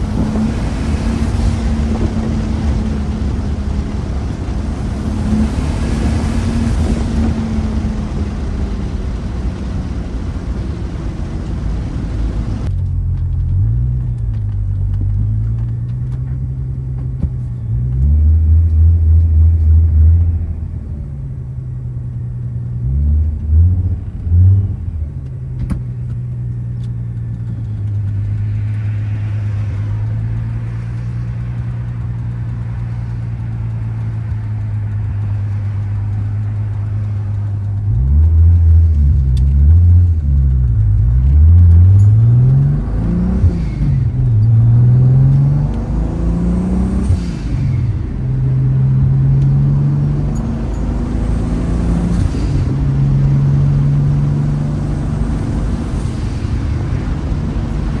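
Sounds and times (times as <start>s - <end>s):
wide rushing noise: 0.0s - 12.7s, 38.8s - 58.0s
engine revving: 0.0s - 12.8s, 27.2s - 58.0s
turbocharged engine droning: 0.0s - 58.0s.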